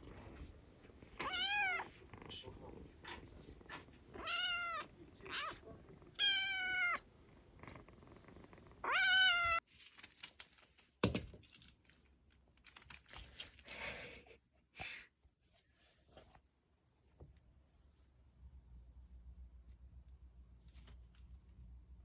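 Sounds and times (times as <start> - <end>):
kitten meowing: 1.2 - 1.9, 4.2 - 5.6, 6.2 - 7.0, 8.8 - 9.6.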